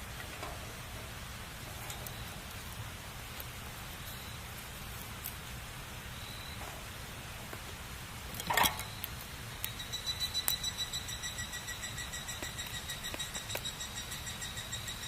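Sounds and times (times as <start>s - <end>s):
wood fire crackling: 0.0s - 15.0s
thin high whistle: 9.7s - 15.0s.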